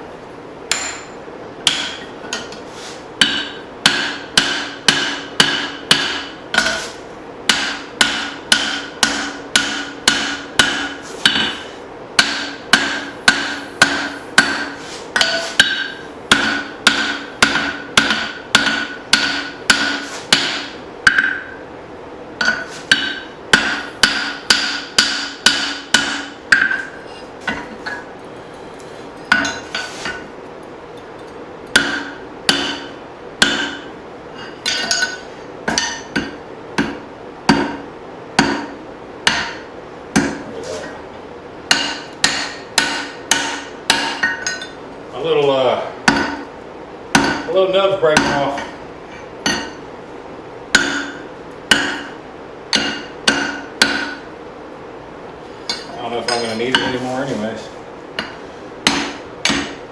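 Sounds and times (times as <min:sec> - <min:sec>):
hammer ringing on steel: 0:00.7 - 0:02.0, 0:03.2 - 0:06.8, 0:07.5 - 0:11.6, 0:12.2 - 0:21.6, 0:22.4 - 0:27.6, 0:31.7 - 0:37.8, 0:41.7 - 0:44.8, 0:47.2 - 0:47.5, 0:49.4 - 0:49.8, 0:50.7 - 0:54.3, 0:58.2 - 0:59.8.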